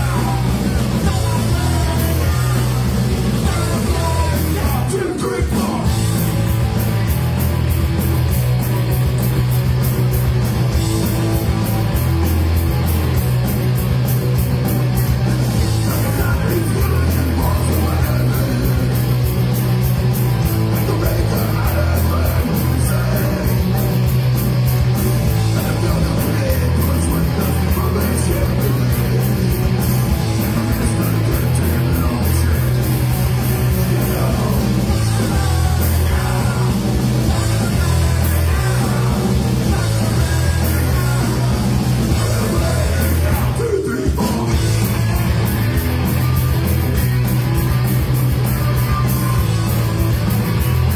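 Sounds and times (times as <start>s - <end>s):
shouted vocals: 0.0s - 6.1s, 30.5s - 44.8s
bass line: 0.0s - 50.9s
live heavy rock band: 0.0s - 50.9s.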